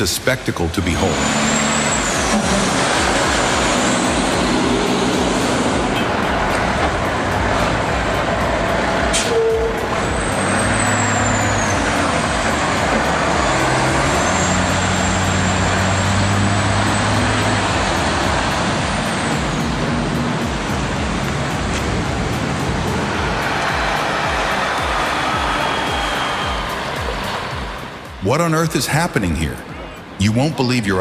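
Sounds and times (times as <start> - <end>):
diesel truck engine running: 0.8 - 28.1.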